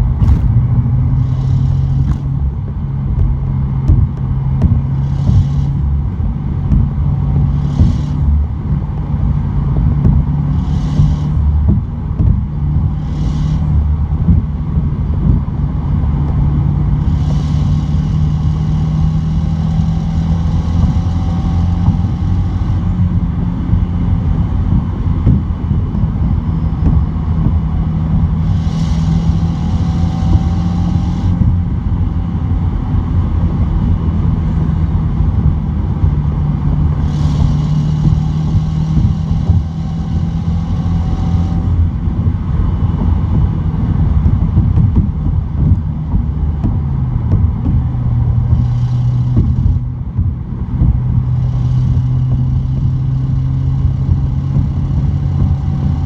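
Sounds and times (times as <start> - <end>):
car engine pulling at speed: 0.0 - 56.0
road noise: 0.0 - 56.0
high hissing: 0.1 - 2.3.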